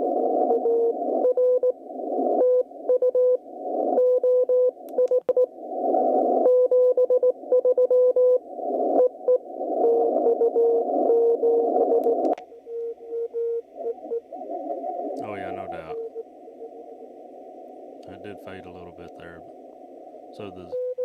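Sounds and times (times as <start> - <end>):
hissing radio static: 0.0 - 6.5, 8.4 - 12.4, 13.0 - 21.0
morse code beeping tone: 0.5 - 1.8, 6.5 - 8.4, 9.0 - 14.3, 15.2 - 16.8, 20.7 - 21.0.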